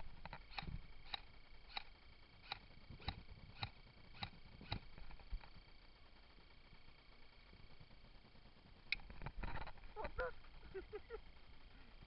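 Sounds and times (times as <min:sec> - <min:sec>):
faint evenly spaced clicks: 0:00.2 - 0:09.1.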